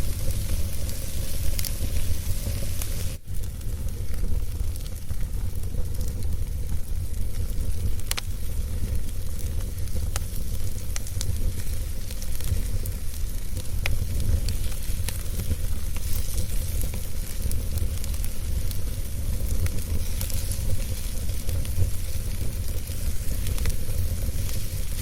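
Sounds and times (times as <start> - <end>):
fire crackling and popping: 0.0 - 25.0
fire rumbling and hissing: 0.0 - 25.0.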